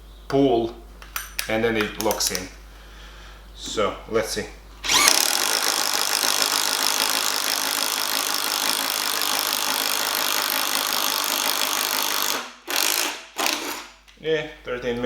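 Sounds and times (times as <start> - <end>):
impact driver rattling: 4.8 - 14.0.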